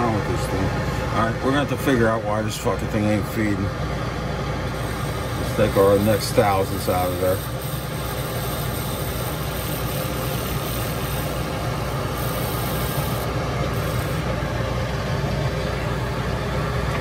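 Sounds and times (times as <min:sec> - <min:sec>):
metal lathe humming: 0:00.0 - 0:17.0.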